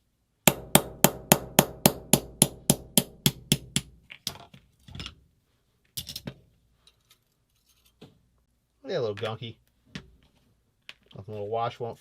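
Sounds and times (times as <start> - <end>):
hammer tapping a pin punch: 0.5 - 3.9.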